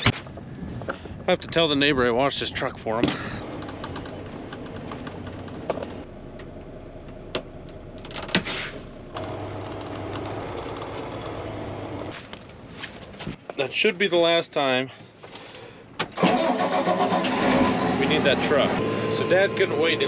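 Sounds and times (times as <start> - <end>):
vehicle engine running: 8.9 - 12.2, 17.7 - 20.0.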